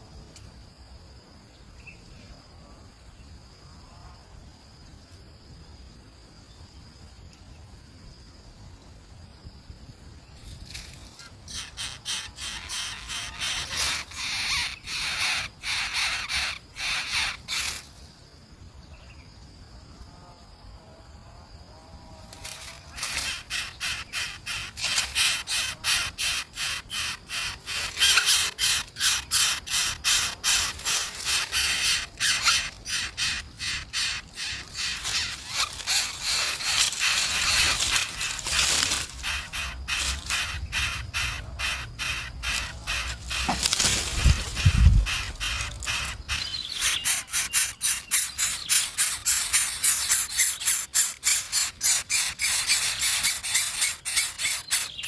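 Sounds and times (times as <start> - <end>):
birds rasping calls: 11.2 - 17.9, 22.5 - 55.0.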